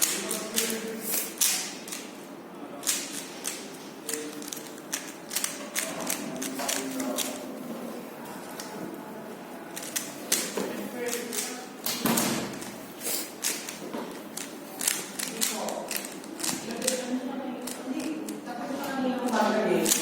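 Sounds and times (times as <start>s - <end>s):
puzzle cube clicking: 14.4s - 17.0s.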